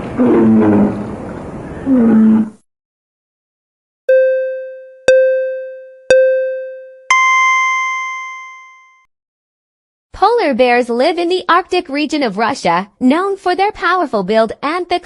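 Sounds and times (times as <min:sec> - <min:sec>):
electronic countdown beeps: 0:04.1 - 0:08.7.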